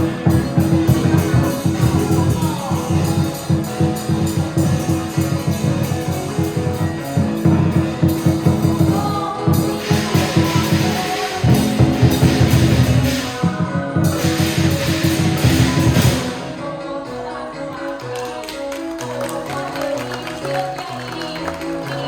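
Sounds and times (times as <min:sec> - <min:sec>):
fast drumming: 0:00.0 - 0:16.8
cymbals crashing: 0:00.0 - 0:17.0.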